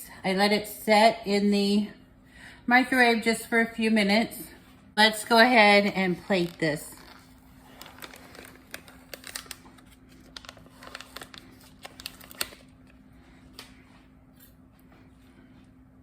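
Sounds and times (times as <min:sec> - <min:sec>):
steady low hum: 0:00.0 - 0:16.0
plastic package crinkling: 0:06.1 - 0:13.0.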